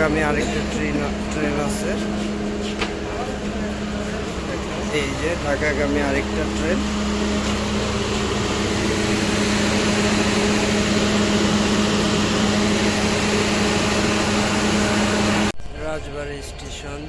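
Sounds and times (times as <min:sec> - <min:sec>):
train machine drone: 0:00.0 - 0:17.0.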